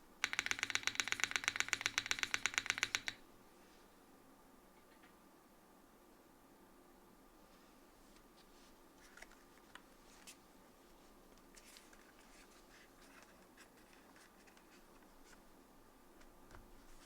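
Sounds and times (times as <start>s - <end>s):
mechanical keyboard typing: 0.2s - 3.2s.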